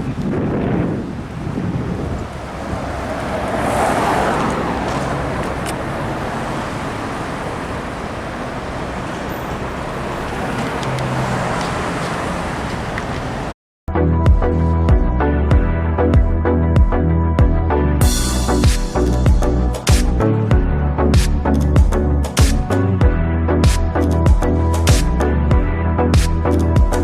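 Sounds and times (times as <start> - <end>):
road traffic noise: 0.0 - 13.6
vehicle passing: 1.1 - 13.5.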